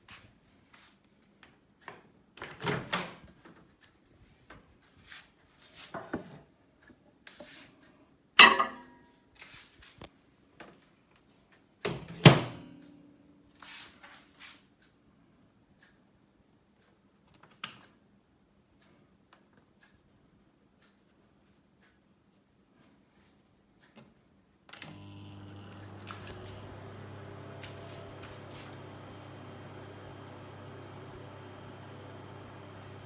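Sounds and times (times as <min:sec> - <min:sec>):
microwave door shutting: 0:25.1 - 0:33.0.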